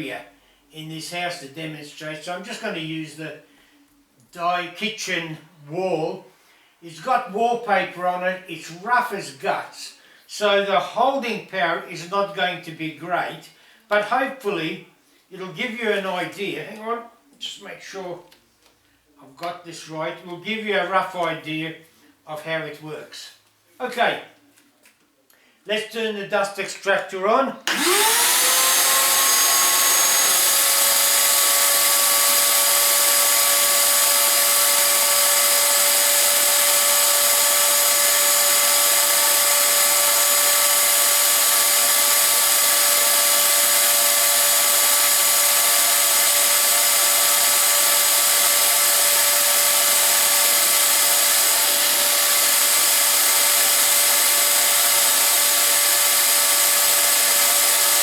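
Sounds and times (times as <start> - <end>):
shop vacuum running: 27.7 - 58.0.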